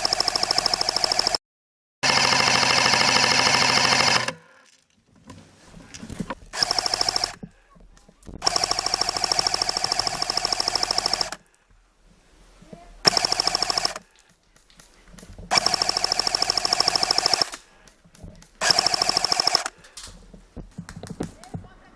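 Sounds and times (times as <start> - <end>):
airsoft gun firing bursts: 0.0 - 1.4, 2.0 - 4.4, 6.5 - 7.4, 8.4 - 11.5, 13.1 - 14.1, 15.5 - 17.6, 18.6 - 19.7.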